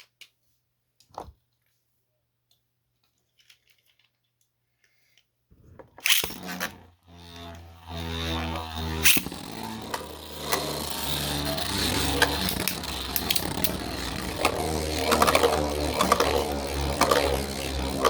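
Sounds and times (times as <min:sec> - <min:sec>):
spinning tops whirring: 0:05.6 - 0:18.0
spinning tops clicking together: 0:06.0 - 0:18.0.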